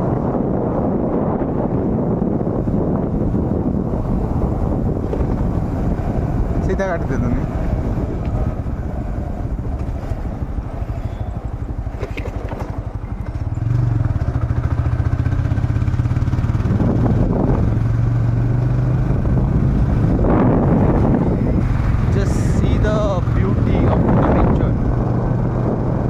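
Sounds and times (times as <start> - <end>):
vehicle engine running: 0.0 - 26.0.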